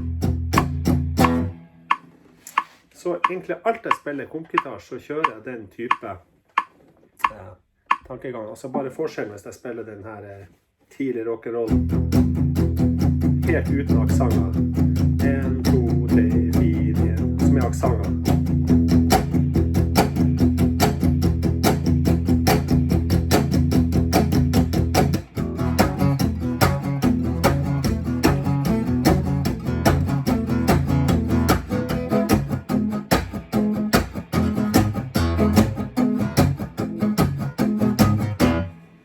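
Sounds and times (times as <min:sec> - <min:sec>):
rhythm guitar strumming: 0:00.0 - 0:08.1, 0:11.7 - 0:39.0.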